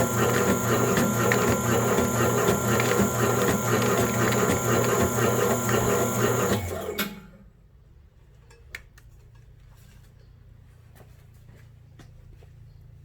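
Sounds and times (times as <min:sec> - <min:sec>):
machine motor humming: 0:00.0 - 0:06.8.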